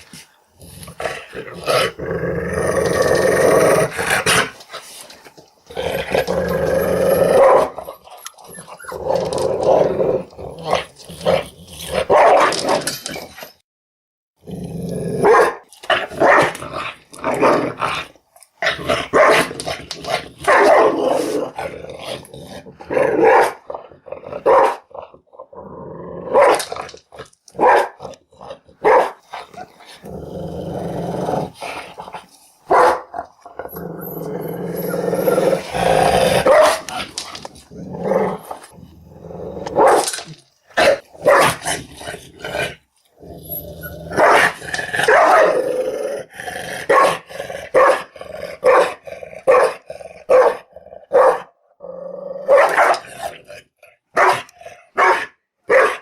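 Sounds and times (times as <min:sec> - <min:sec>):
dog growling: 0:00.6 - 0:04.7, 0:05.6 - 0:12.1, 0:14.4 - 0:27.3, 0:27.9 - 0:51.1
dog barking: 0:12.1 - 0:12.5, 0:15.2 - 0:15.6, 0:16.2 - 0:16.6, 0:19.1 - 0:19.5, 0:20.5 - 0:21.0, 0:23.2 - 0:23.6, 0:24.4 - 0:24.9, 0:26.3 - 0:26.6, 0:27.6 - 0:28.0, 0:28.8 - 0:29.2, 0:32.7 - 0:33.1, 0:36.4 - 0:36.8, 0:39.8 - 0:40.0, 0:40.8 - 0:41.6, 0:44.2 - 0:45.6, 0:46.9 - 0:47.2, 0:47.8 - 0:51.5, 0:52.5 - 0:53.0, 0:54.2 - 0:56.0.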